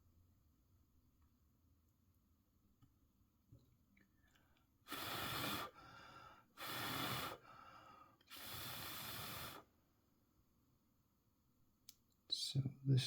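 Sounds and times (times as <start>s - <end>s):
quiet breaths: 4.0s - 10.1s
person breathing out loudly: 4.9s - 9.7s.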